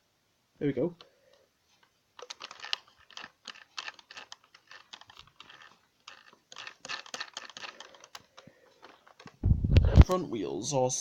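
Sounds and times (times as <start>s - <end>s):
plastic toy clicks and rattles: 2.2s - 9.4s.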